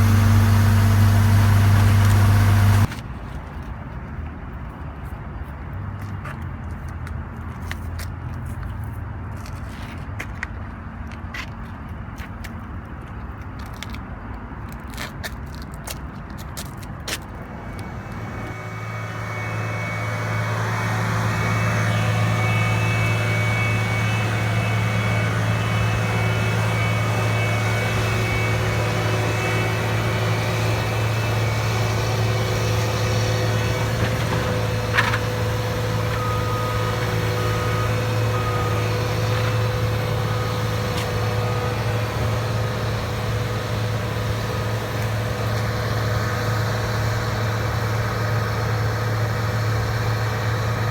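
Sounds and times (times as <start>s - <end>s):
diesel engine running: 0.0s - 4.9s, 16.8s - 50.9s.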